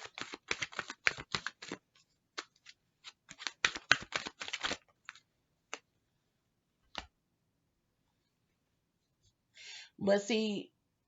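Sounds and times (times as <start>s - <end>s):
cards shuffling and snapping: 0.0s - 5.9s, 6.8s - 7.1s.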